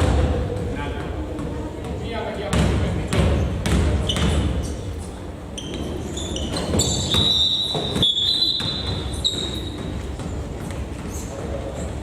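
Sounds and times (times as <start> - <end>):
shoes squeaking on gym floor: 3.4 - 12.0.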